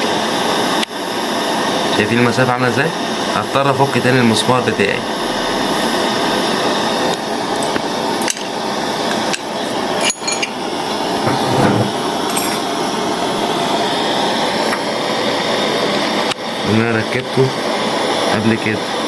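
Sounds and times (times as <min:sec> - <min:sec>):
steady loud hiss: 0:00.0 - 0:19.0.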